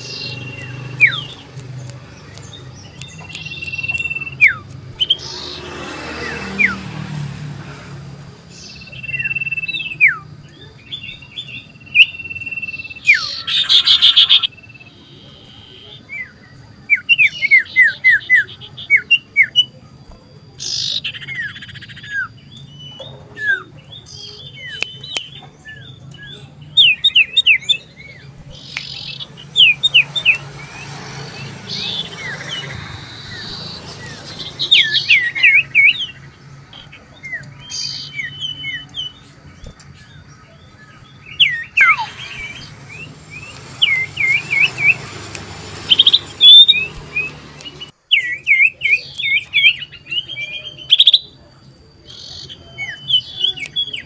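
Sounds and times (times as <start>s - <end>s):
bird singing whistles: 2.4s - 5.6s, 8.5s - 19.8s, 36.8s - 39.8s, 41.0s - 51.4s.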